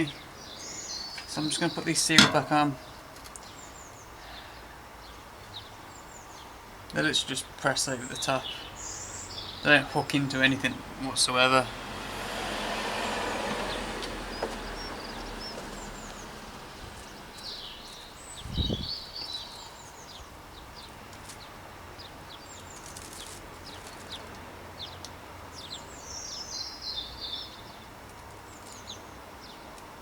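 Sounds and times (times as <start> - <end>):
small birds chirping: 0.0 - 30.0
dull thump: 2.2 - 2.9.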